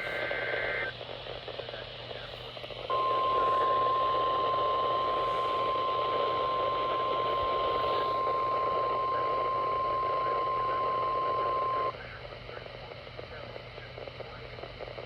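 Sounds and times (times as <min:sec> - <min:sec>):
steady alarm tone: 0:00.0 - 0:00.9, 0:02.9 - 0:11.9
radio hiss: 0:00.0 - 0:15.0.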